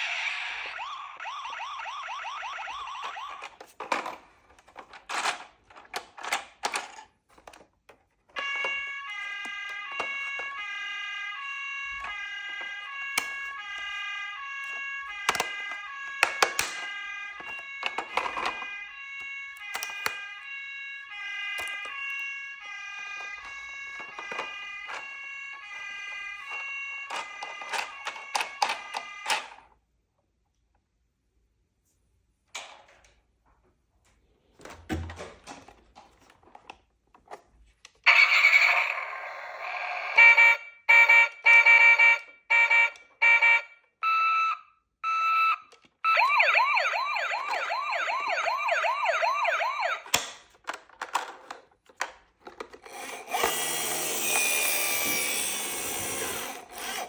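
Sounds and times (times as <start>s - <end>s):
stepped electronic siren tune: 0.0s - 3.5s, 8.4s - 28.4s, 43.4s - 50.1s
toy siren wavering wail: 0.0s - 3.6s, 8.4s - 29.6s, 38.0s - 50.2s, 53.0s - 57.0s.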